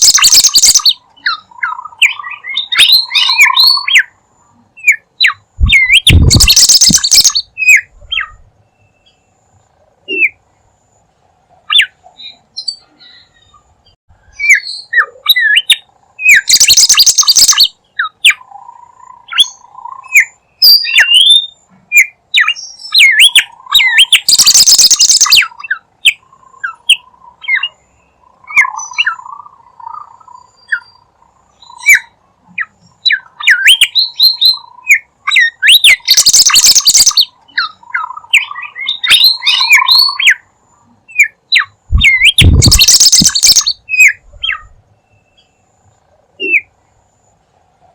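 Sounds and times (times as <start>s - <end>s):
harsh raspy bird calls: 0.0s - 4.2s, 4.8s - 8.4s, 14.4s - 44.7s
high bird chirps: 0.0s - 4.2s, 4.8s - 9.4s, 11.6s - 45.7s
soft bird warble: 5.6s - 8.3s, 41.9s - 44.6s.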